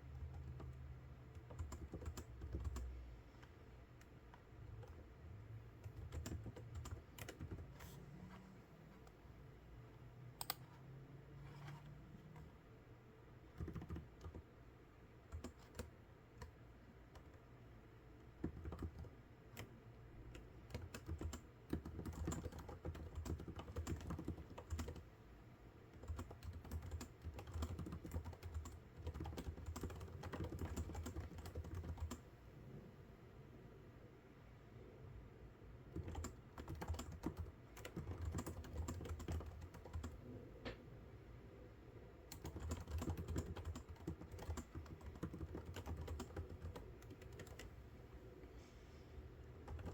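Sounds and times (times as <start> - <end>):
typing on computer keyboard: 0.0 - 3.0, 5.8 - 7.9, 10.4 - 10.6, 13.5 - 14.5, 15.3 - 17.4, 18.3 - 19.7, 20.3 - 25.1, 25.9 - 32.2, 35.9 - 40.2, 42.3 - 47.8, 49.6 - 49.9.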